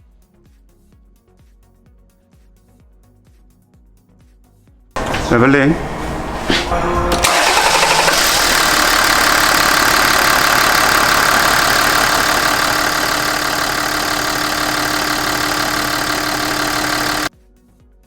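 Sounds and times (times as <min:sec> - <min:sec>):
car engine idling: 0:05.0 - 0:17.3.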